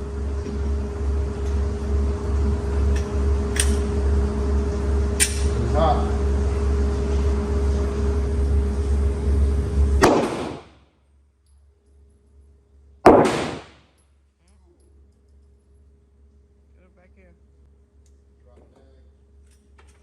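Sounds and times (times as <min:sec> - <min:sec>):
steady hum: 0:00.0 - 0:20.0
pistol shots: 0:10.0 - 0:10.8, 0:13.0 - 0:13.9.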